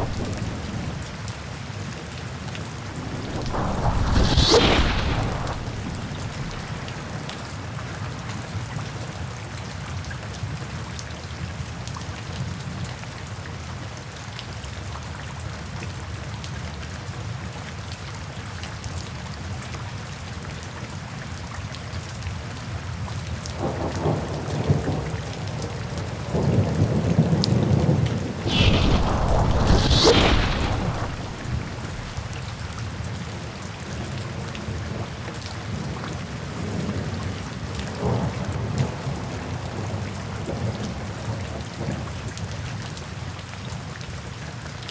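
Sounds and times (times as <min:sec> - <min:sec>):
thunder rumbling and cracking: 0:00.0 - 0:08.0, 0:26.3 - 0:33.5
heavy rain falling: 0:00.0 - 0:08.2, 0:23.6 - 0:41.9.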